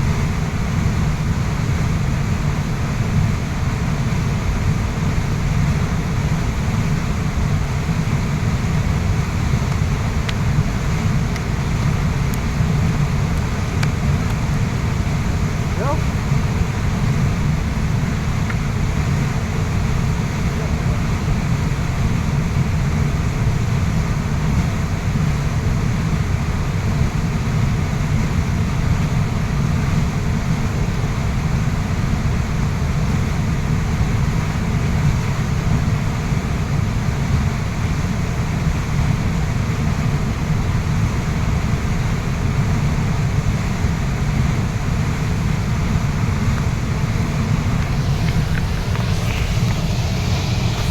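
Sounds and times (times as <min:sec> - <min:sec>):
waterfall rushing: 0:46.7 - 0:50.9.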